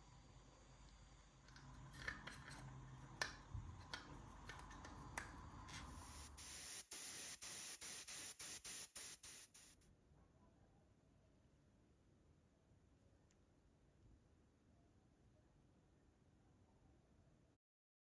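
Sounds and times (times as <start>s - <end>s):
steady high hiss: 5.8s - 9.8s.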